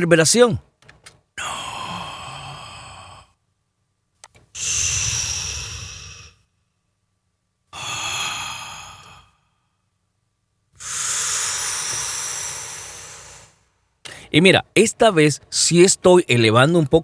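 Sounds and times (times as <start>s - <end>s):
breathy mouth whooshes: 4.6s - 6.4s, 7.8s - 9.4s, 10.8s - 13.6s.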